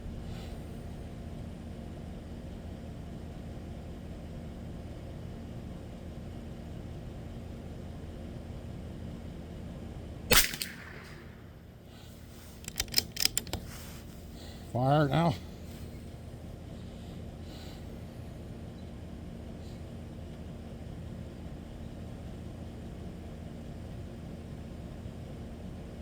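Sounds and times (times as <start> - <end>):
sharp clicks: 10.3 - 11.5, 12.5 - 13.7
rifle shot: 10.3 - 12.0
steady low rumble: 10.3 - 17.0.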